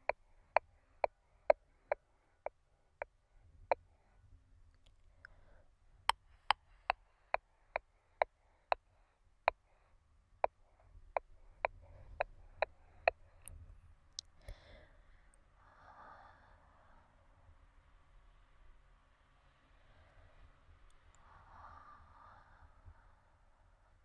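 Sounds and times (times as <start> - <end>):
soft breath out: 14.4 - 17.1.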